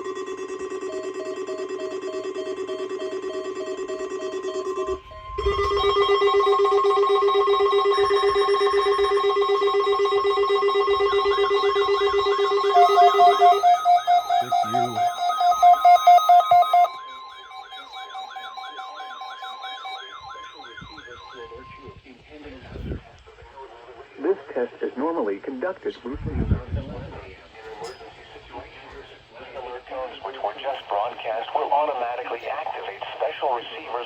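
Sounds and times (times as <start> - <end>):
steady electronic tone: 0.0 - 23.0
warbling siren-like tones: 0.0 - 23.1
rapidly pulsing electronic beeps: 0.0 - 23.7, 29.7 - 34.0.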